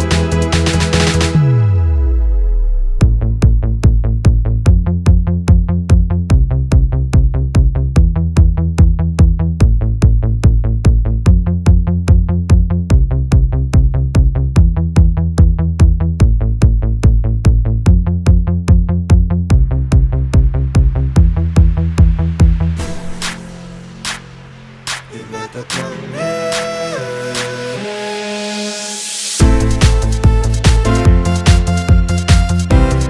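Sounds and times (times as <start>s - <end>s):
electronic dance music: 0.0s - 3.3s, 19.6s - 33.0s.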